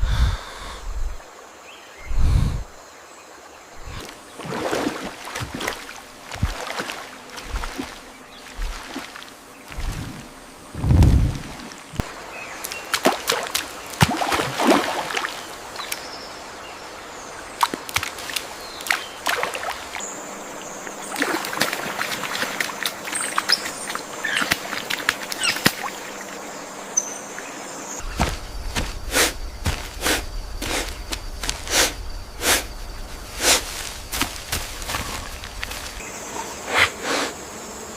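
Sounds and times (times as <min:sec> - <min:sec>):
water splashes: 0:03.8 - 0:16.0, 0:17.5 - 0:20.0, 0:20.9 - 0:26.4
rustles: 0:28.0 - 0:37.4.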